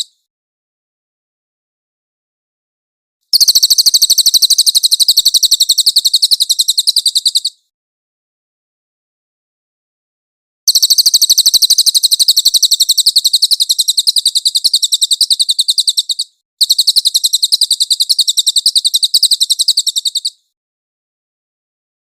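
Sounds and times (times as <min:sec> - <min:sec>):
bird fast chirping trill: 0:03.3 - 0:07.7, 0:10.7 - 0:20.6.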